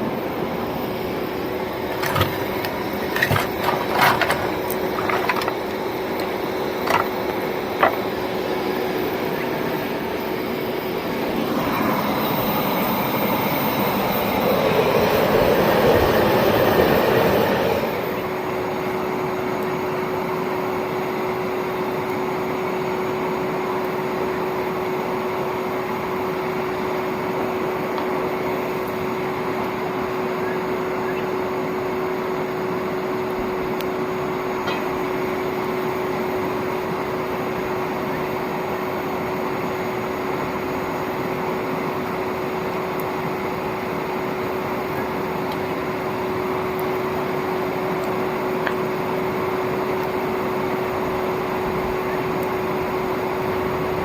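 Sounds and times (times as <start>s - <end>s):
blower motor humming: 0.0s - 54.0s
sharp clicks and knocks: 1.9s - 8.1s.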